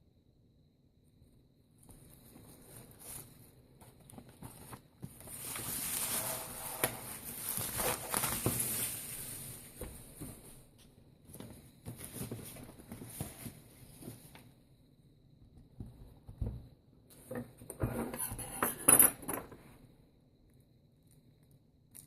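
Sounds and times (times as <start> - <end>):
packaging rustling and crinkling: 2.4 - 10.4.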